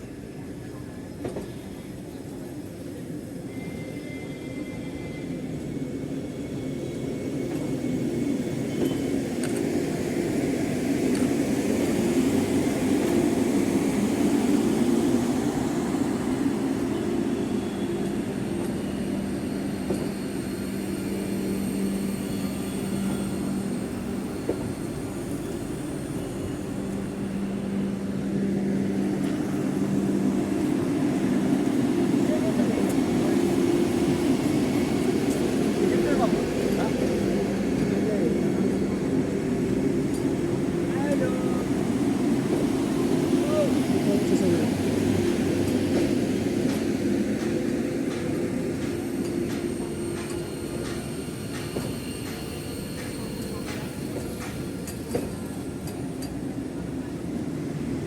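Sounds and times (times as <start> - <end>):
electric train rumbling on rails: 0.0 - 58.0.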